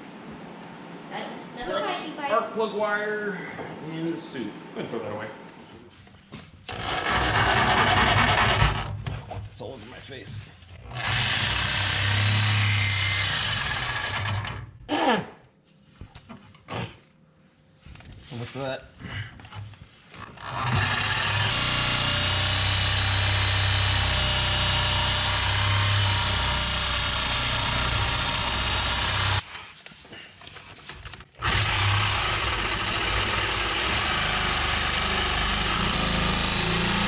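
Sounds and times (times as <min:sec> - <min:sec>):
reciprocating saw cutting metal: 0:06.7 - 0:08.9, 0:10.9 - 0:14.6, 0:20.4 - 0:29.4, 0:31.4 - 0:37.0.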